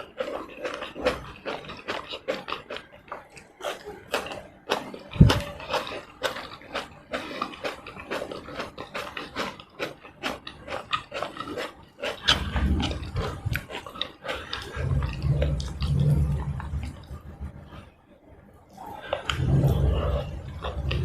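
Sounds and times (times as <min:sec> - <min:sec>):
mouth chewing and smacking: 0:00.0 - 0:17.9
heavy low rumble: 0:12.3 - 0:13.7, 0:14.4 - 0:18.0, 0:19.1 - 0:21.0.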